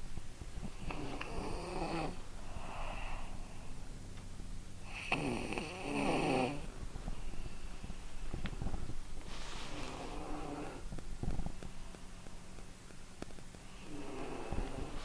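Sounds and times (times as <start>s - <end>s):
person snoring: 4.9s - 6.7s, 9.8s - 10.8s.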